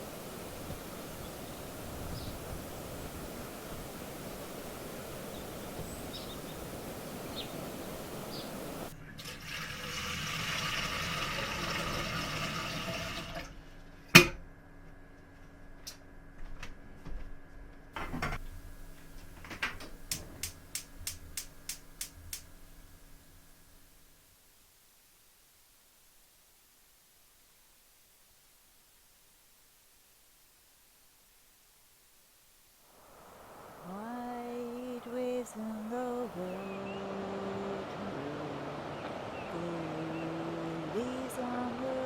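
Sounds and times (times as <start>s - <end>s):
faint steady hum: 0.0s - 9.2s, 10.5s - 42.0s
water running: 0.0s - 13.5s
quick ticks: 20.1s - 22.5s.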